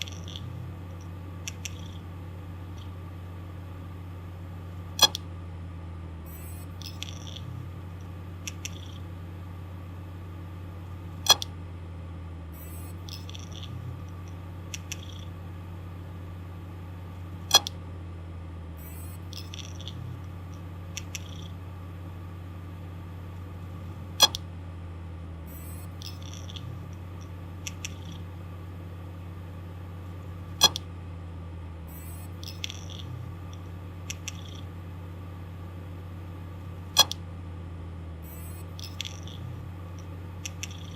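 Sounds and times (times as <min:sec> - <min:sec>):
hard drive clicking: 0:00.0 - 0:03.2, 0:04.9 - 0:05.3, 0:06.3 - 0:09.2, 0:11.2 - 0:11.6, 0:12.6 - 0:15.4, 0:17.2 - 0:17.8, 0:18.9 - 0:21.7, 0:24.0 - 0:24.5, 0:25.5 - 0:28.4, 0:30.2 - 0:31.0, 0:31.9 - 0:34.8, 0:36.8 - 0:37.3, 0:38.3 - 0:40.9
hard drive humming: 0:00.0 - 0:40.9
faint double ticks: 0:30.6 - 0:30.9, 0:32.4 - 0:34.6, 0:37.0 - 0:37.2.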